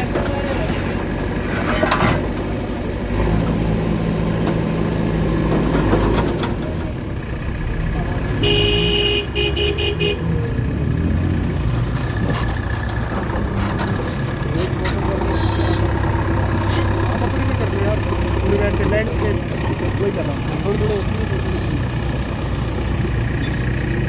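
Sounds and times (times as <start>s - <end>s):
vehicle engine running: 0.0s - 24.0s
vehicle horn honking: 8.4s - 10.3s, 15.2s - 16.0s.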